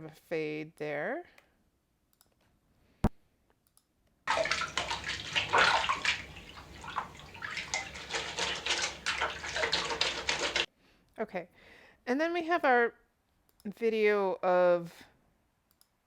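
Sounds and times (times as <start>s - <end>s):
hands washed under running tap: 4.3s - 10.7s.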